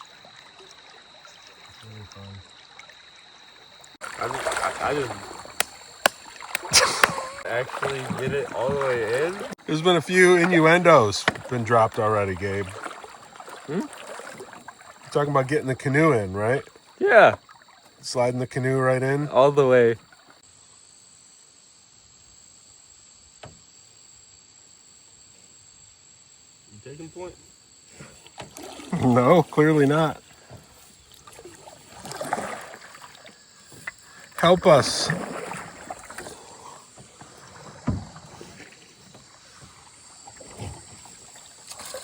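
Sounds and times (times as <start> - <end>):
water and paddle noise: 0.0 - 20.4, 26.9 - 42.0
crickets trilling: 0.0 - 42.0
thump against canoe: 4.5 - 9.5, 11.2 - 11.6, 27.9 - 29.2, 29.8 - 42.0.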